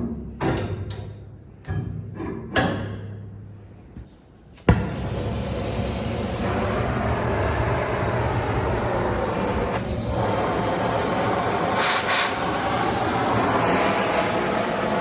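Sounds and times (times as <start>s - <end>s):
metal-cutting tool hissing: 4.7s - 15.0s.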